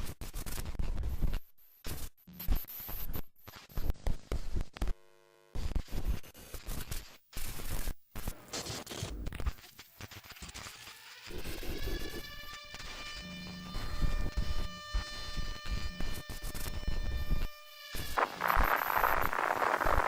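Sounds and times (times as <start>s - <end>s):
crackling broadcast static: 0.2s - 12.0s, 18.2s - 20.0s
short buzzing tone: 11.4s - 20.0s.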